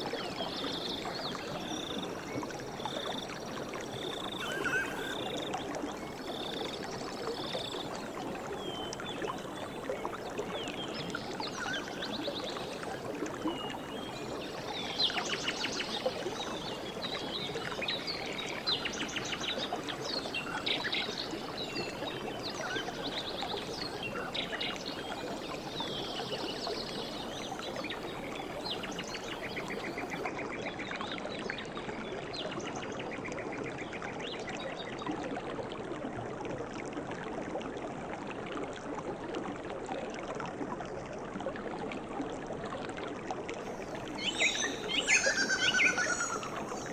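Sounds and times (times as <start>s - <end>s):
stream flowing: 0.0s - 46.9s
birds calling and trilling: 4.0s - 5.4s, 43.8s - 46.9s.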